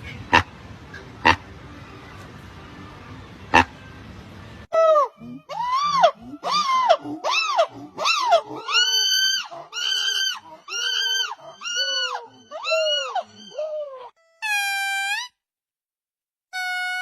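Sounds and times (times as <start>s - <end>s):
monkey calling: 4.7s - 15.3s.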